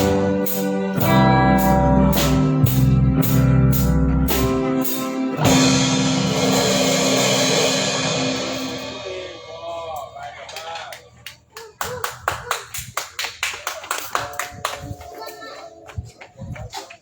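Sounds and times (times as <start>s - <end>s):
band playing guitar bass and drums: 0.0s - 9.4s
cymbal crash: 0.0s - 10.0s.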